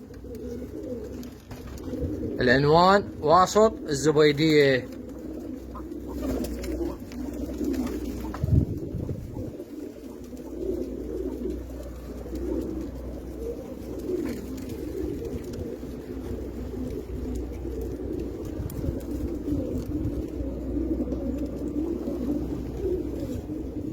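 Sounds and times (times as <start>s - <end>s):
pigeons cooing: 0.0s - 23.9s.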